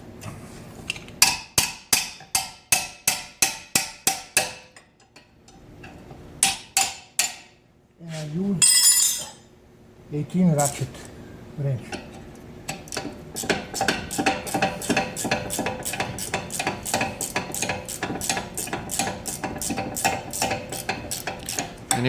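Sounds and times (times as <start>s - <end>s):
ratchet wrench clicking: 12.9s - 22.0s.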